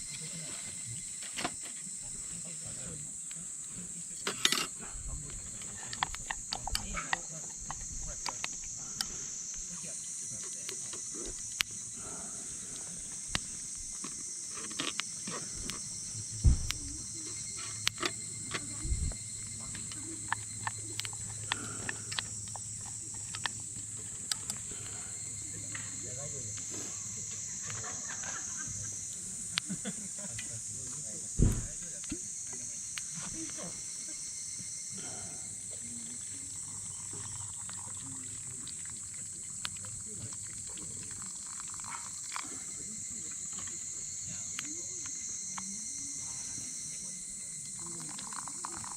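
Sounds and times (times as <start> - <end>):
insect chorus: 0.0 - 48.9
dull low thump: 16.4 - 17.0, 18.8 - 19.2, 31.4 - 31.8.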